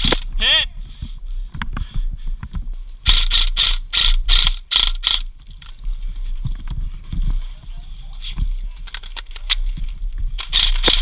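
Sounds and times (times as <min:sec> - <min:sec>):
airsoft gun firing shots: 0:10.4 - 0:11.0.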